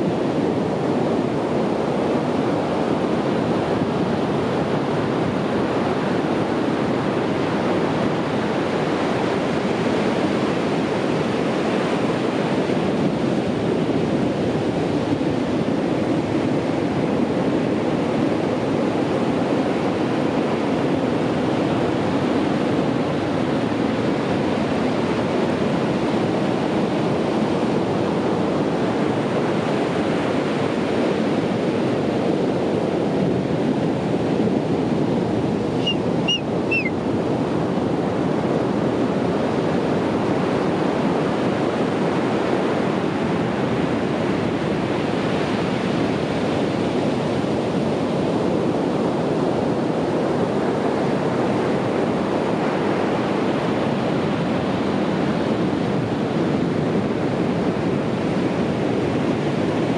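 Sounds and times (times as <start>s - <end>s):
ocean surf on a beach: 0.0s - 59.9s
short high chirps: 35.8s - 36.9s.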